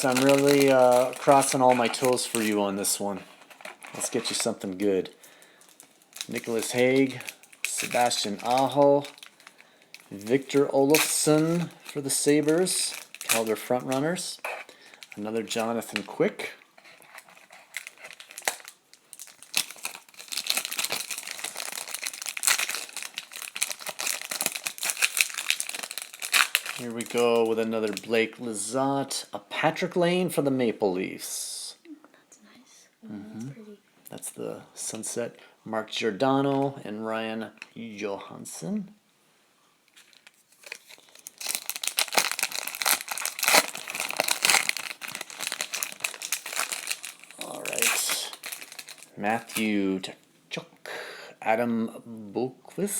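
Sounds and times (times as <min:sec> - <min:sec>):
wrapper tearing and crinkling: 0:00.0 - 0:04.6, 0:05.4 - 0:28.0, 0:39.9 - 0:49.7.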